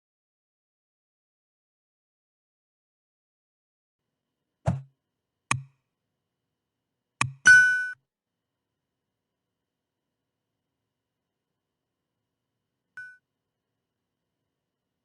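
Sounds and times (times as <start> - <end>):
bright ding: 7.5 - 8.0, 13.0 - 13.2.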